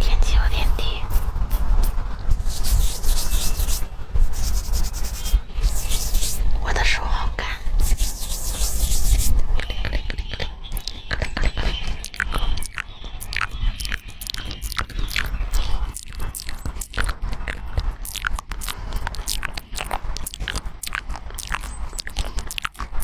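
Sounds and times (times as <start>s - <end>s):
crisp crunching: 7.8s - 23.0s.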